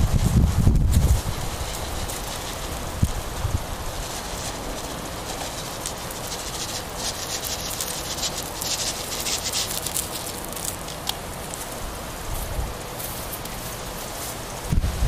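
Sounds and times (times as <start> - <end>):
outdoor background noise: 0.0 - 15.0
quick rustling and scratching: 0.9 - 11.8.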